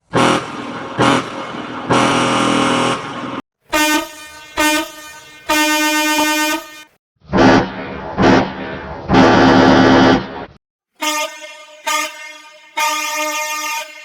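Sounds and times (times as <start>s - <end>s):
truck air horn blasts: 0.1s - 7.0s, 11.0s - 14.0s.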